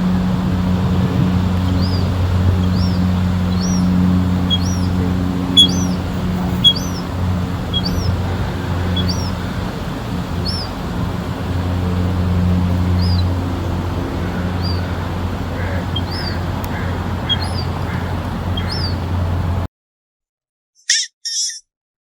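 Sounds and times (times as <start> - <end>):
steady low hum: 0.0 - 19.7
small bird chirping: 1.6 - 10.8, 12.8 - 13.4, 14.2 - 19.1, 20.8 - 21.7.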